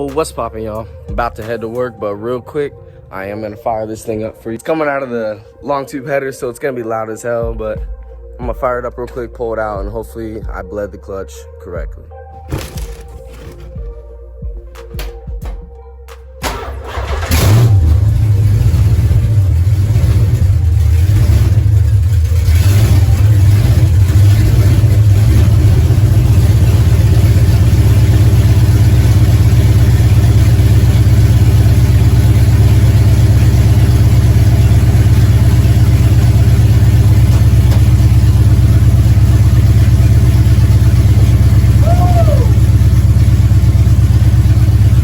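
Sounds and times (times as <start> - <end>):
engine cranking: 16.1 - 29.0, 29.6 - 41.8
engine throttle blips: 16.4 - 45.0
loud engine running: 16.4 - 45.0.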